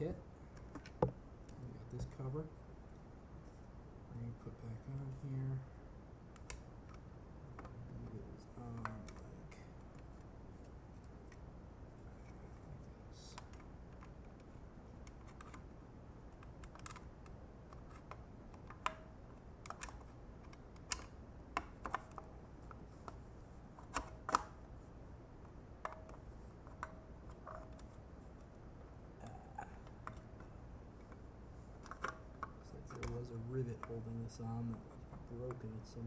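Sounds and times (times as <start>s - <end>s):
steady low hum: 0.0s - 36.0s
plastic parts clicking and tapping: 31.8s - 33.2s.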